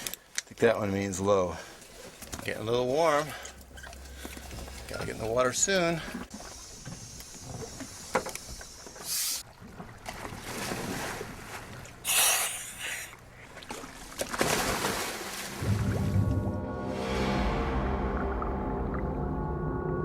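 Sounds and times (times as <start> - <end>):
water around a boat: 0.0 - 20.0
music: 15.6 - 20.0.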